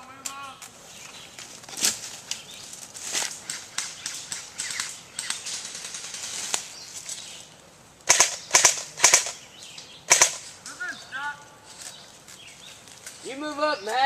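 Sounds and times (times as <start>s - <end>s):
airsoft guns firing: 8.0s - 9.4s, 10.1s - 10.5s.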